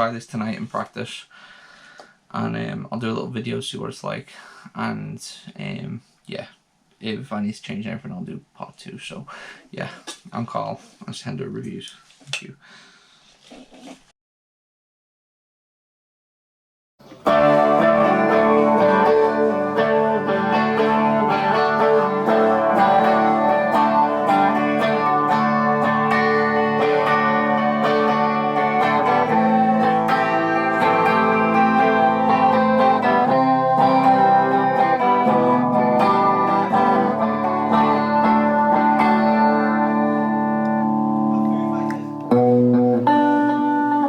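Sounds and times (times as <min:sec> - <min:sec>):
electric guitar music: 0:17.0 - 0:44.0.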